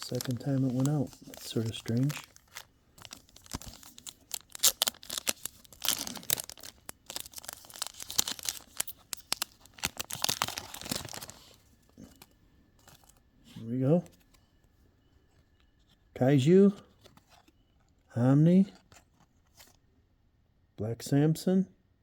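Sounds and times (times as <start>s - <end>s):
foil wrapper tearing and crinkling: 0.0s - 12.3s.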